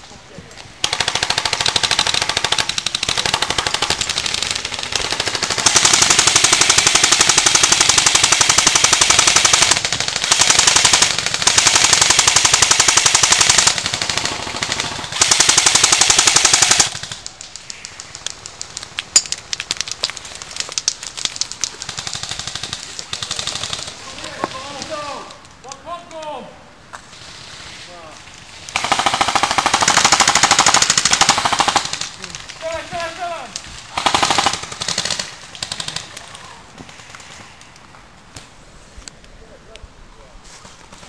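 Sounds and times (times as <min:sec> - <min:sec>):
airsoft guns full-auto bursts: 0:00.8 - 0:17.2, 0:21.8 - 0:24.0, 0:28.7 - 0:32.8, 0:33.9 - 0:36.1.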